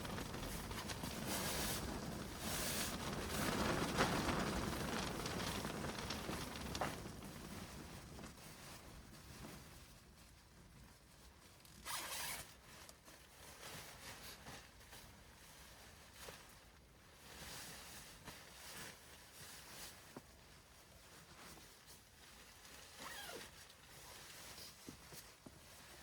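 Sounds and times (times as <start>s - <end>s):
rustles and scrapes: 0.0s - 26.0s
zipper being pulled: 11.8s - 12.6s, 23.0s - 23.6s.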